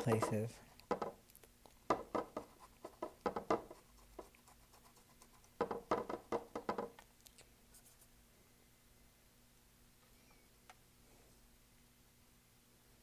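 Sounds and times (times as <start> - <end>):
paintbrush scratching on canvas: 0.0 - 0.6, 2.0 - 5.8.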